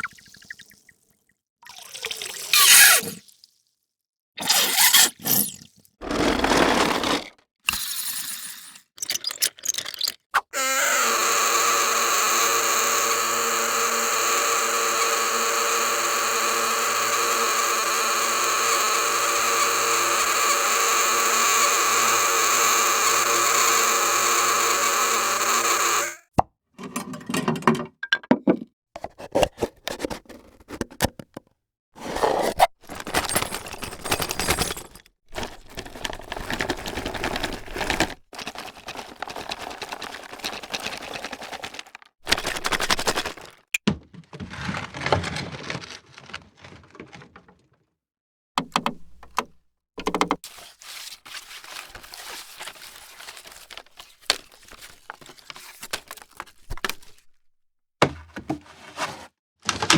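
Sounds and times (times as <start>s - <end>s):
scraping or rustling: 35.3s - 47.8s, 50.4s - 57.2s, 58.5s - 59.9s.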